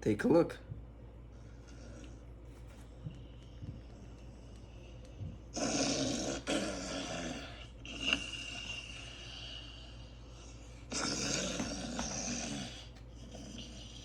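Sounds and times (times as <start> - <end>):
snoring through a speaker: 5.5 - 14.0.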